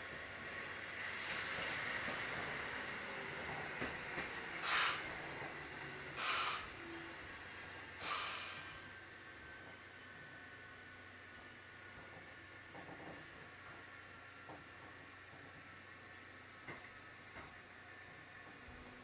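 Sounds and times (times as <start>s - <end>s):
train running noise: 0.0s - 19.0s
compressed air hiss bursts: 4.6s - 5.1s, 6.2s - 6.8s, 8.0s - 8.8s.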